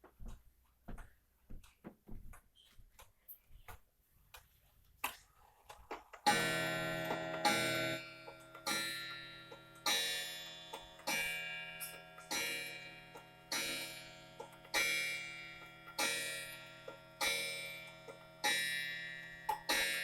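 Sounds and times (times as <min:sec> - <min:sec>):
clock ticking: 0:05.9 - 0:20.0
clock gong striking: 0:06.3 - 0:17.7.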